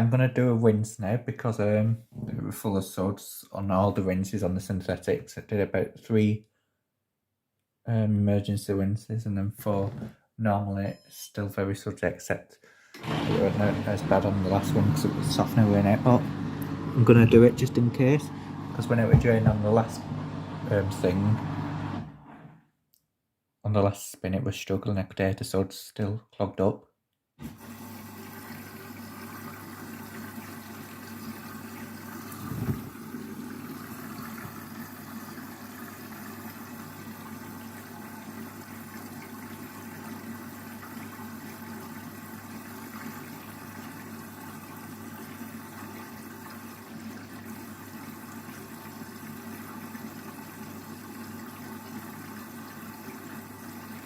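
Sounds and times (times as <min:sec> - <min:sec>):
water rushing through washing machine: 0:13.0 - 0:22.6, 0:27.4 - 0:54.0
low thump: 0:19.0 - 0:19.8.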